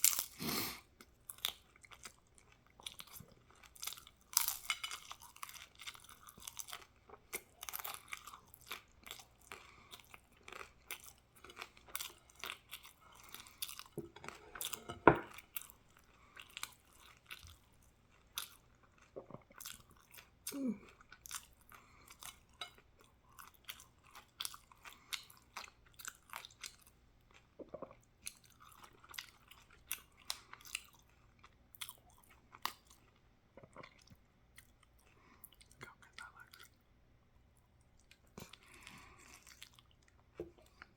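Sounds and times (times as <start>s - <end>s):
person chewing crunchy food: 0.0s - 36.8s, 37.7s - 40.9s.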